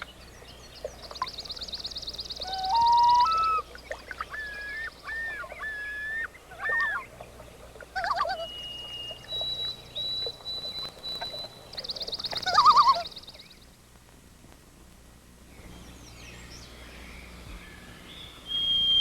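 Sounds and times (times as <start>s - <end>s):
birds calling and singing: 0.0s - 13.7s, 15.5s - 19.0s
high whistled bird notes: 8.1s - 13.2s, 18.1s - 19.0s.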